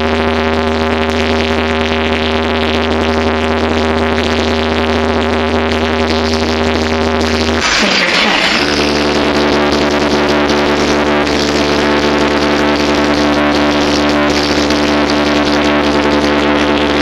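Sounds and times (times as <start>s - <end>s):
held synth drone: 7.1s - 17.0s.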